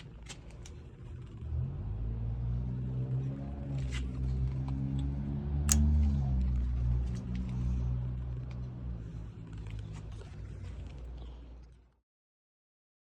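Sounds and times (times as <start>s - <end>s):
sharp clicks: 4.7s - 6.6s.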